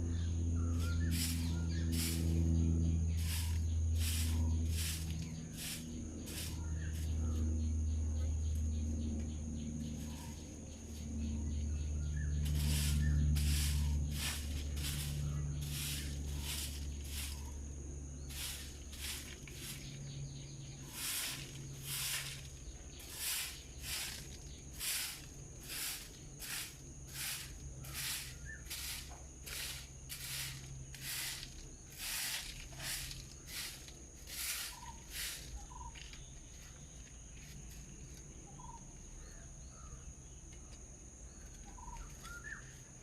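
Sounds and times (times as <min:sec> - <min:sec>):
high-pitched whine: 0:00.0 - 0:17.6
low hum: 0:00.0 - 0:24.6.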